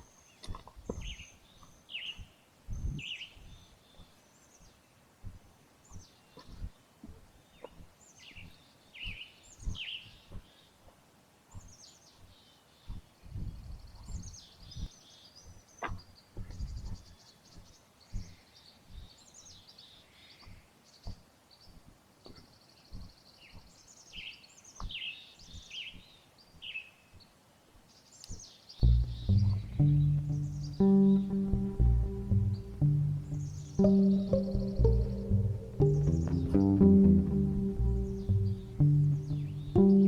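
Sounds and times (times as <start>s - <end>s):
birds chirping and trilling: 22.3s - 27.2s, 28.2s - 40.0s.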